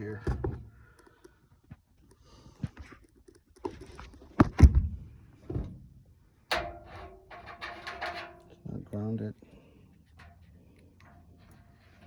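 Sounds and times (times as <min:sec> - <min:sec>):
knocks and clatters on metal: 0:06.5 - 0:08.7.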